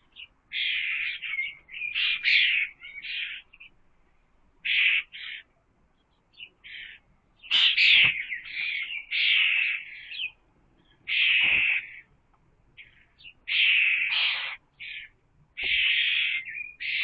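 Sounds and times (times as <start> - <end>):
birds rasping chirps: 0.0 - 3.8, 4.6 - 17.0.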